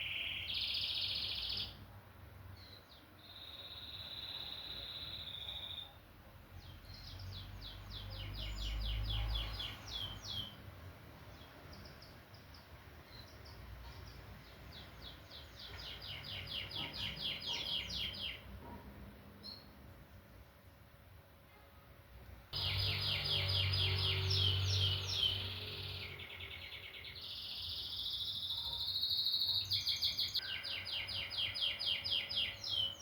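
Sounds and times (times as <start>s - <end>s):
canary singing: 11.8s - 18.5s, 22.6s - 33.0s.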